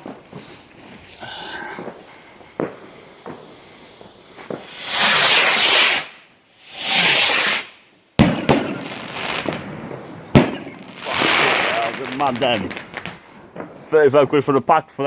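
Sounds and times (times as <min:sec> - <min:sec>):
firework bangs and crackling: 0:00.0 - 0:14.5
rocket launching hiss: 0:02.6 - 0:12.1
faint pops: 0:12.4 - 0:13.7.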